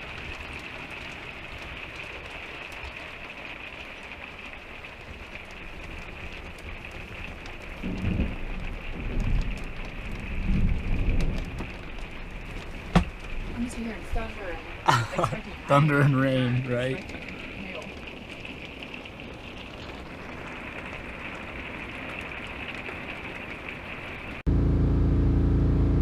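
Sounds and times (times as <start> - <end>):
low thunder rumbling: 0.0 - 15.7
rain and hail on a roof: 0.0 - 24.5.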